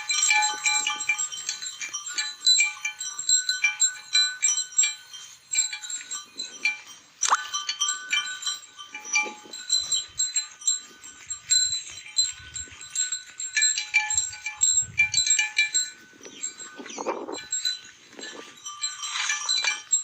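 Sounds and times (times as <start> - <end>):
neck bells clinking: 0.0 - 20.0.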